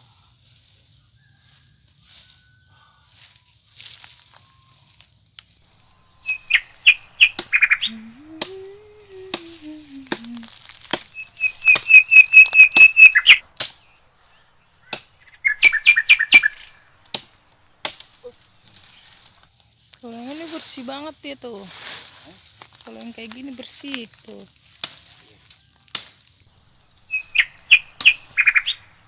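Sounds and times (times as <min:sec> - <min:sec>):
bird calling in clipped notes: 0:05.7 - 0:19.4, 0:26.7 - 0:29.0.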